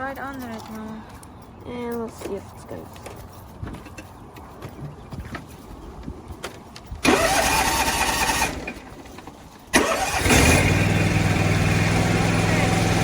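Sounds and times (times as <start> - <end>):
lawn mower engine cranking: 7.0 - 13.0
lawn mower engine idling: 7.0 - 13.0.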